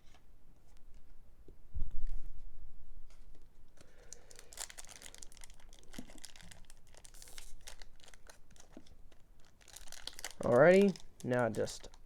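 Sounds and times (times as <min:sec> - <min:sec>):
foil wrapper crinkling and tearing: 0:03.8 - 0:12.0.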